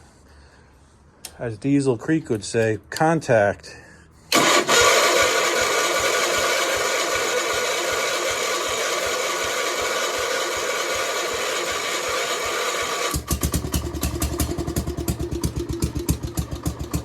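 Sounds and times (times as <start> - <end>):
tractor engine cranking and starting: 4.3 - 17.0.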